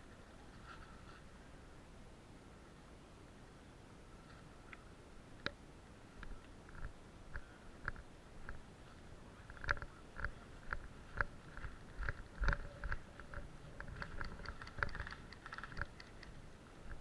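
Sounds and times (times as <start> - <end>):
light rustles and ticks: 0.1 - 1.4, 4.2 - 5.6, 6.2 - 17.0.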